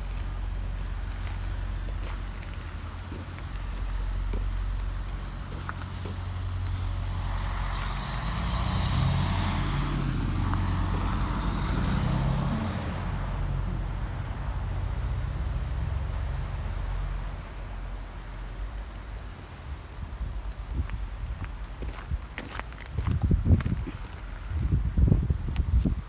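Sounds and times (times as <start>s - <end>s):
steady low rumble: 0.0s - 11.9s
motor vehicle passing: 0.0s - 17.0s.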